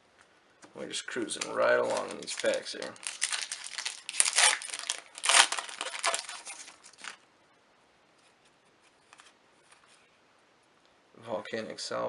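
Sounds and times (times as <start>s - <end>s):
foil wrapper crinkling and tearing: 1.3s - 7.2s.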